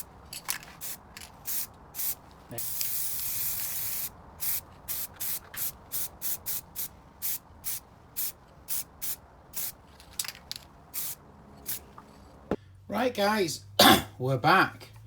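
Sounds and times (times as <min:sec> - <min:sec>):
spray paint can hissing: 0:00.8 - 0:09.8, 0:10.9 - 0:11.9.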